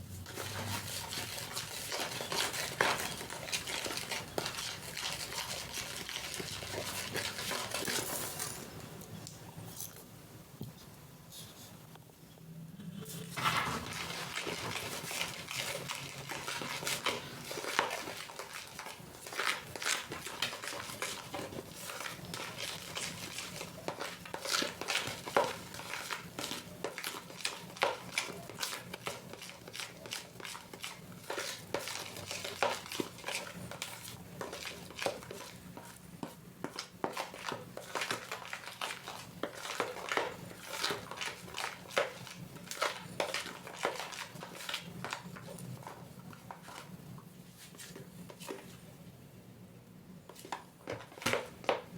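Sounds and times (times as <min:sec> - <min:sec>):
utensil scraping mixing bowl: 0:00.0 - 0:08.9, 0:12.8 - 0:47.0.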